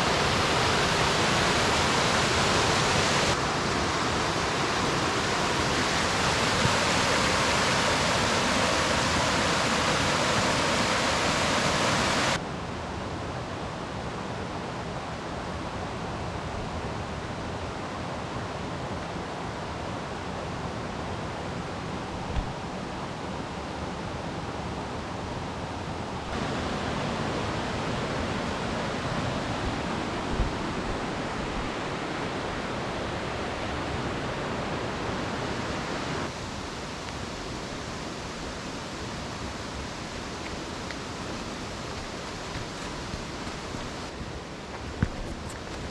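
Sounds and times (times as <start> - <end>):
running water rushing: 0.0 - 12.4, 26.2 - 45.9.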